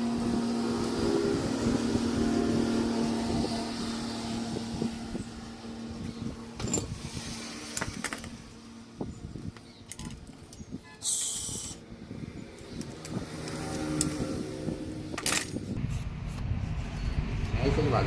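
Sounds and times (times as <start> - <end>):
short sharp hiss: 11.0 - 11.8.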